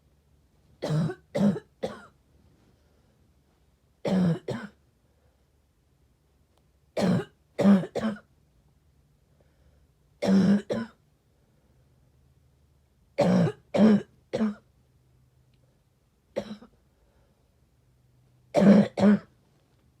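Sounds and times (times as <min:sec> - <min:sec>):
person coughing: 0:00.8 - 0:02.1, 0:04.1 - 0:04.8, 0:07.0 - 0:08.2, 0:10.2 - 0:11.0, 0:13.2 - 0:14.6, 0:16.4 - 0:16.7, 0:18.6 - 0:19.3.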